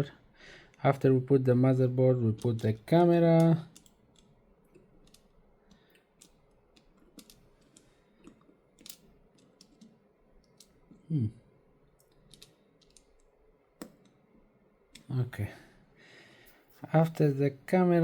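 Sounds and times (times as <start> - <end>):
small parts clicking: 2.3 - 11.1, 11.9 - 14.3
short vocal sound: 11.0 - 11.4.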